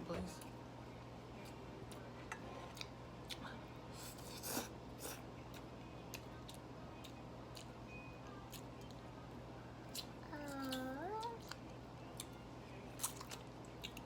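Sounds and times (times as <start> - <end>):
low steady hum: 0.0 - 14.0
chewing and utensil clicks: 9.9 - 12.4, 13.0 - 14.0.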